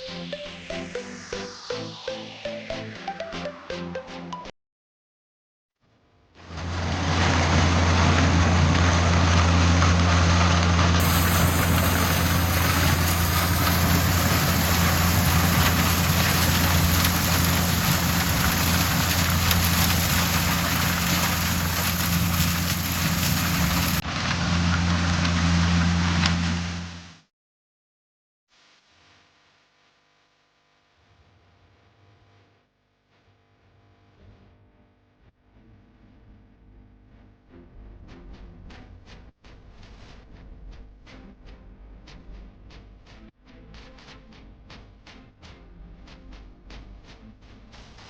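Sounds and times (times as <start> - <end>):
combine harvester droning: 6.6 - 26.9.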